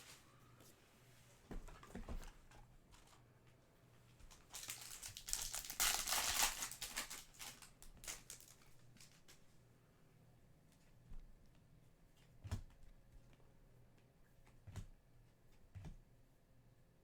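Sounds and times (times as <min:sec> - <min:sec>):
packaging crinkling: 0:04.3 - 0:09.4.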